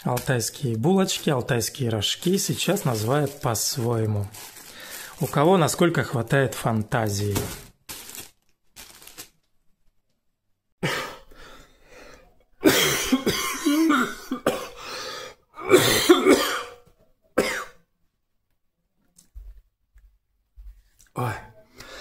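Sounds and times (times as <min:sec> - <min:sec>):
man coughing: 0:10.8 - 0:11.3, 0:12.6 - 0:14.9, 0:15.6 - 0:16.8, 0:17.4 - 0:17.8.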